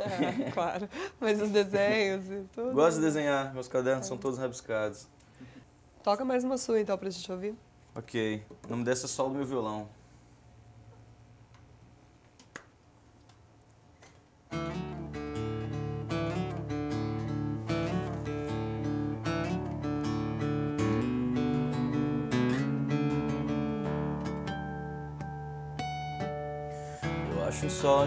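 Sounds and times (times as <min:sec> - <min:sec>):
acoustic guitar chords: 0:14.5 - 0:28.0.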